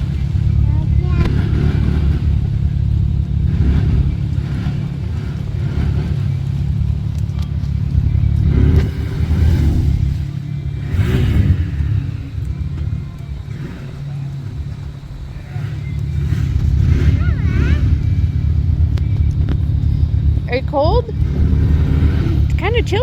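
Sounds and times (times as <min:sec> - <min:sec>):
atv engine revving: 0:00.0 - 0:23.0.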